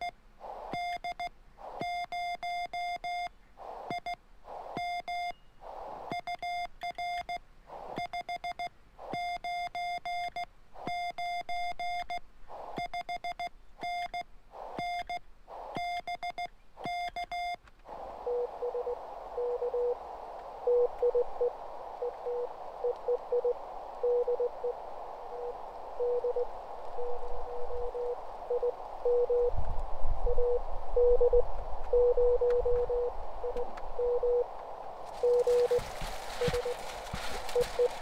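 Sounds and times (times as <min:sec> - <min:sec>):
radio static: 0:03.6 - 0:04.8, 0:07.7 - 0:08.0, 0:12.5 - 0:12.8, 0:14.5 - 0:15.9, 0:32.2 - 0:38.0
lower-pitched morse code: 0:25.4 - 0:27.2, 0:30.3 - 0:34.5, 0:35.1 - 0:38.0
high morse code tone: 0:35.1 - 0:38.0.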